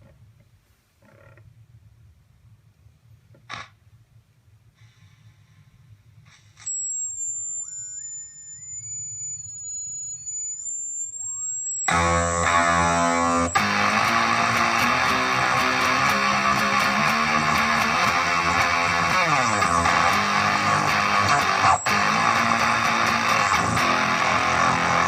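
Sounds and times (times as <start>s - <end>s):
fuzz pedal oscillating squeal: 6.3s - 25.0s
fuzzed electric guitar playing: 7.0s - 25.0s.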